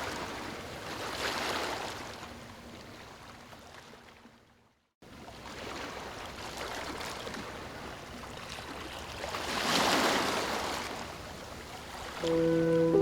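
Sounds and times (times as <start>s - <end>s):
ocean surf washing: 12.2s - 13.0s.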